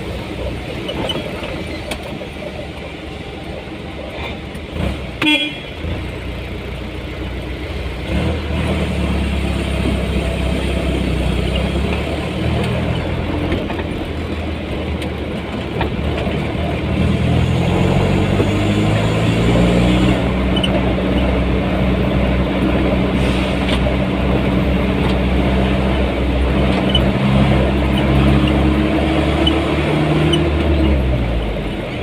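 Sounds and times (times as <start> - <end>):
road traffic: 0.0 - 32.0
vehicle engine running: 0.0 - 32.0
short horn toot: 5.2 - 5.8.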